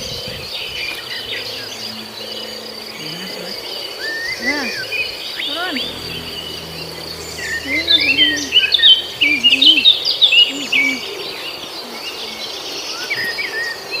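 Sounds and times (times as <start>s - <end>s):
insect-like drone: 0.0s - 11.1s.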